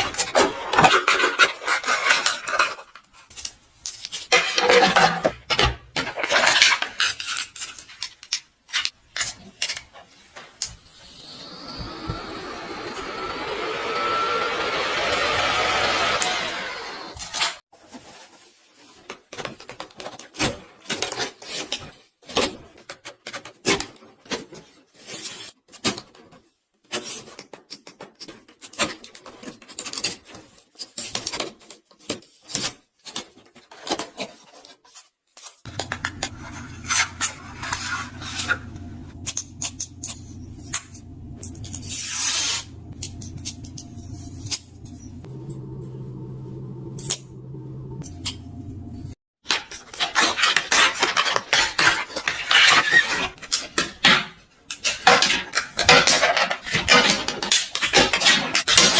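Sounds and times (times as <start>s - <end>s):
rasping scrapes: 35.7s - 46.0s
steady low hum: 35.7s - 49.2s.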